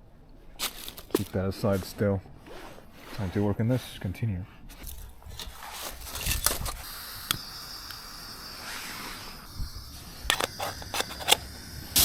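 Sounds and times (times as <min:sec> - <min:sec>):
faint steady hiss: 0:00.0 - 0:12.0
cooking gear clicks and taps: 0:00.7 - 0:01.4, 0:10.3 - 0:11.4.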